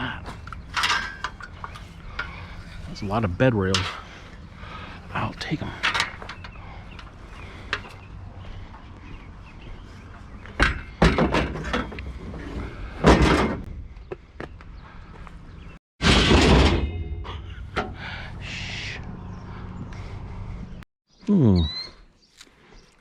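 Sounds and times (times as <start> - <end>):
steel rails clanking onto a pile: 0.3 - 1.9, 16.0 - 17.4.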